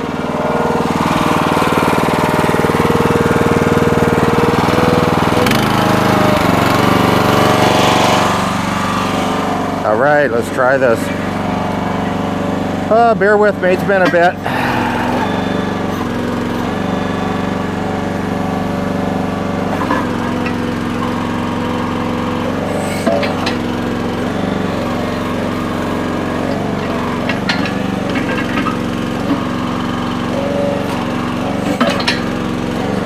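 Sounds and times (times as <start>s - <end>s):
small gasoline engine running: 0.0s - 33.0s
machine knocks and clanks: 26.5s - 29.5s.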